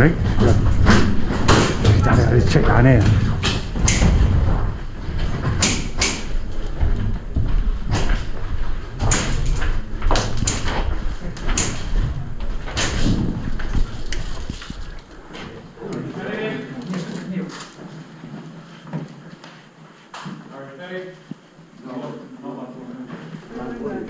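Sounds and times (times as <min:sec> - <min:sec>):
sharp clacks and knocks: 0:00.2 - 0:15.5
steady low rumble: 0:06.3 - 0:15.9.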